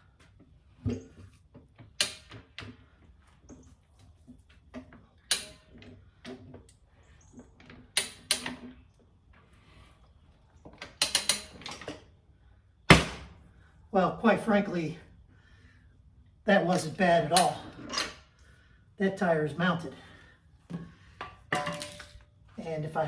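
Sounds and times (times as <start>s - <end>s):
tire changer tools clicking and knocking: 0.9s - 2.9s, 4.7s - 6.7s, 7.6s - 8.8s, 10.7s - 12.0s, 20.7s - 22.2s.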